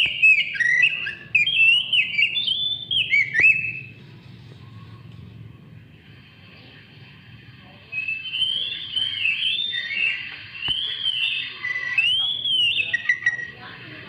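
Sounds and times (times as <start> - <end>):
bird singing whistled phrases: 0.0 - 3.9, 7.9 - 13.6.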